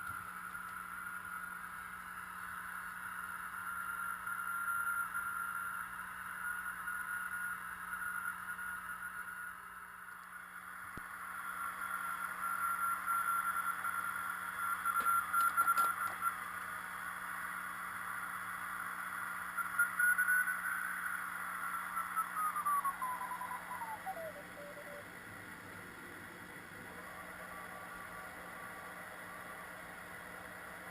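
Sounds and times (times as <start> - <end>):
radio band hiss: 0.0 - 30.9
whistle-like beat note: 22.0 - 25.0.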